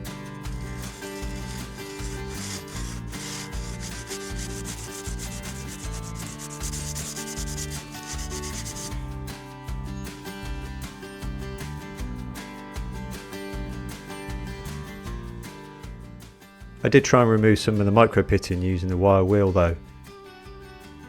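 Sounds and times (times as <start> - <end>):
background music: 0.0 - 21.0
metal rubbing on abrasive paper: 0.4 - 9.0.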